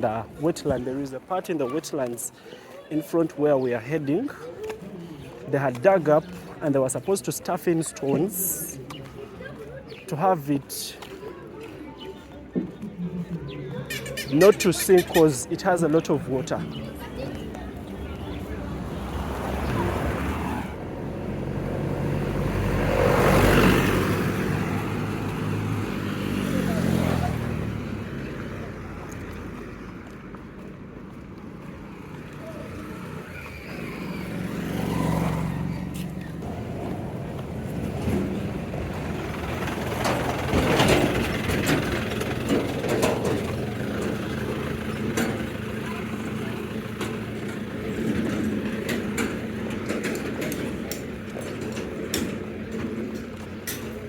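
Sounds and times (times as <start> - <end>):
vehicle passing by: 0.2 - 54.0
vehicle engine running: 34.3 - 54.0
sharp knocks and rattles: 36.4 - 54.0.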